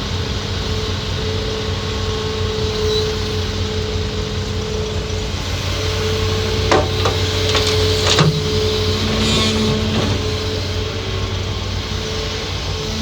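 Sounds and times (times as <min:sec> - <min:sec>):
excavator diesel engine: 0:05.0 - 0:12.7
sharp knocks: 0:06.6 - 0:10.3.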